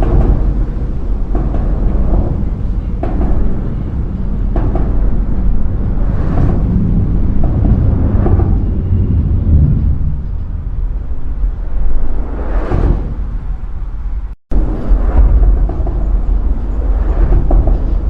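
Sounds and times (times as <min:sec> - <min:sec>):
bridge deep low rumble: 0:00.0 - 0:18.0.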